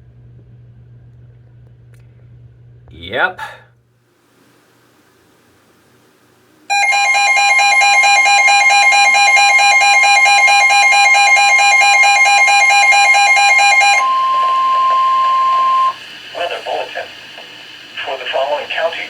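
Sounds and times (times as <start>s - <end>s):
electronic alarm tone: 6.7s - 16.0s.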